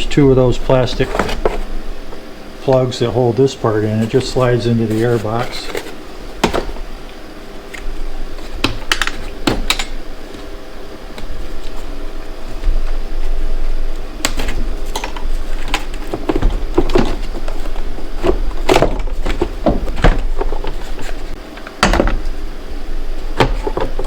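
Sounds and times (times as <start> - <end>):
steady low hum: 0.0 - 24.0
plastic knocks and scraping: 1.0 - 1.7, 14.3 - 22.3, 23.3 - 24.0.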